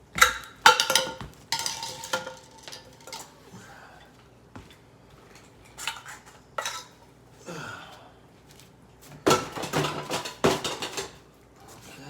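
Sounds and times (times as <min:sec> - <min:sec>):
bowls and utensil clinking: 0:00.2 - 0:03.4, 0:05.3 - 0:07.0.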